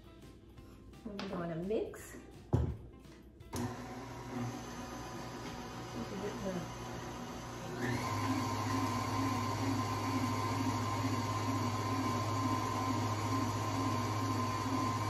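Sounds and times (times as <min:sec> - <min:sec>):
stand mixer motor humming: 0:03.6 - 0:15.0.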